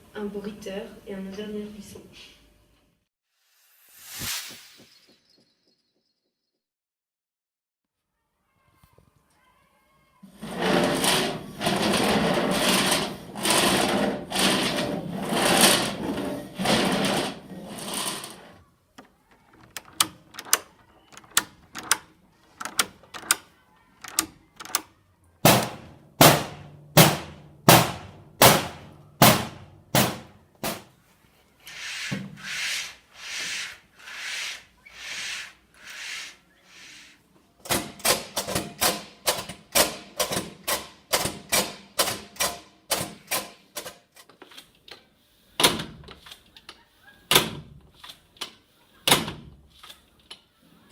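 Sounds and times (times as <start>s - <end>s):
soft noisy strokes: 3.3s - 5.3s, 31.1s - 37.3s.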